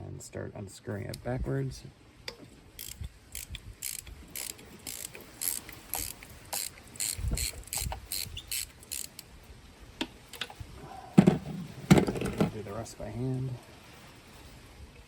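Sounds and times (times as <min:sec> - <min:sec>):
ratchet clicking: 0:02.8 - 0:09.2.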